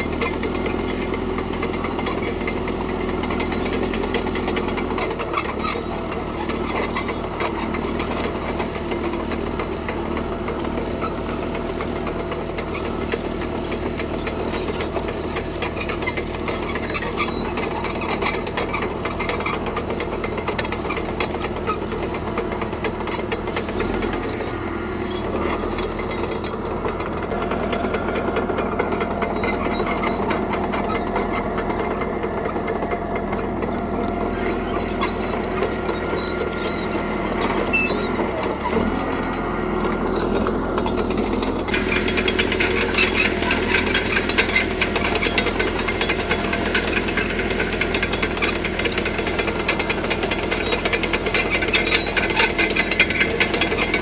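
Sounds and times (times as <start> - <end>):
bulldozer diesel engine: 0.0 - 54.0.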